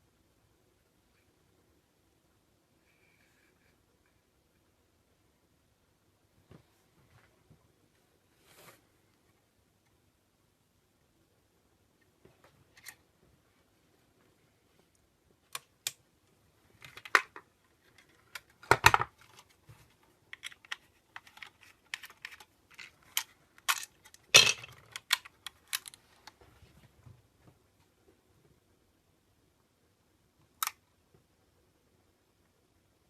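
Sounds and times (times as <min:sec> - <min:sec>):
hard objects clicking and knocking: 0:20.4 - 0:26.0.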